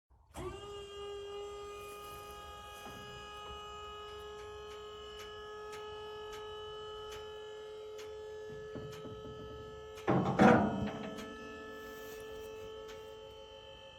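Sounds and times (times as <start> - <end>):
machine whine: 0.3 - 13.9
faint ticks: 4.2 - 7.3, 7.9 - 8.2.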